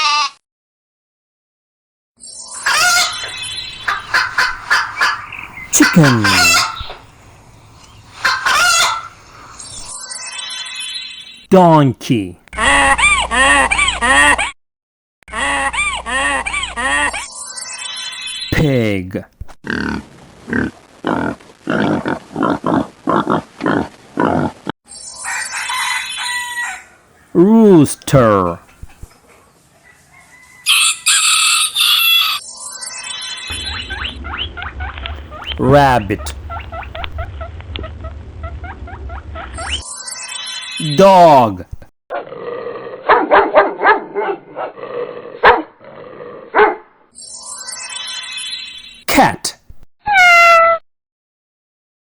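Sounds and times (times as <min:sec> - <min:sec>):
pig grunting: 0:19.6 - 0:24.7
dog barking: 0:43.1 - 0:44.7, 0:45.4 - 0:45.7, 0:46.6 - 0:46.8.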